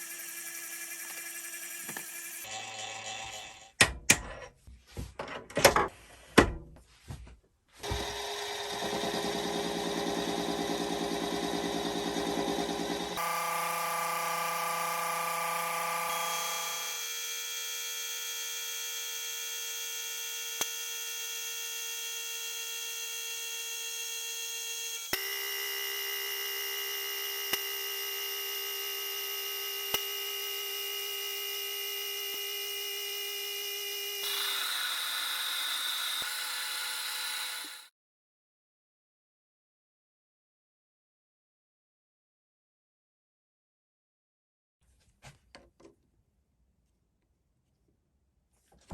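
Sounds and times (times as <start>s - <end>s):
lathe motor whining: 0.0s - 3.7s, 7.8s - 17.0s, 25.1s - 37.9s.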